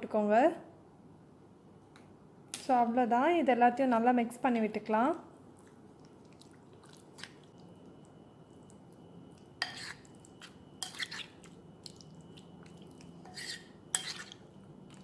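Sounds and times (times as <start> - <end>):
wet squelches of marinade mixing: 4.4 - 15.0.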